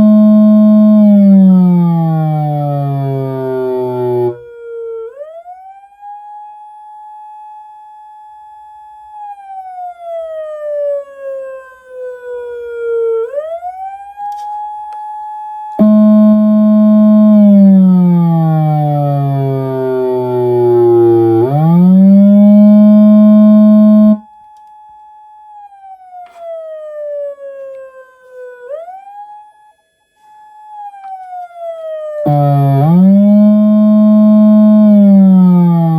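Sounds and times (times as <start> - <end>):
electronic siren rising and falling: 0.0 - 4.5, 15.8 - 24.2, 30.8 - 35.9.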